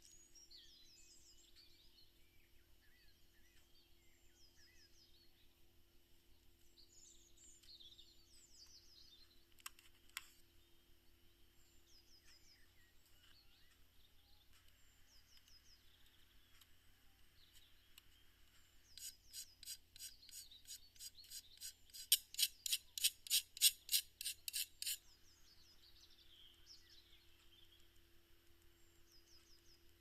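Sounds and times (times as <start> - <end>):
file rasping on small part: 19.0 - 25.0.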